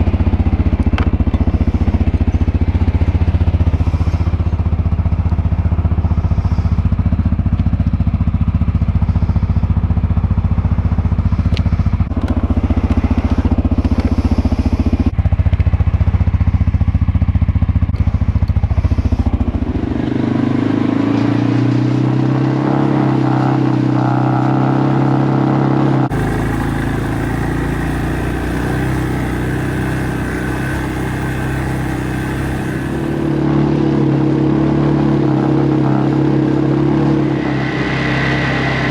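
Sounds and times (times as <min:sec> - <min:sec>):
atv engine under load: 0:26.0 - 0:33.8.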